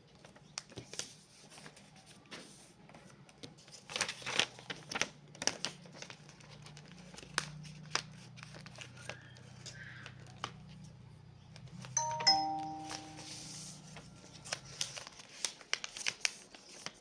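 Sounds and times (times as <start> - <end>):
paper rustling and crinkling: 0.1 - 10.5, 13.9 - 17.0.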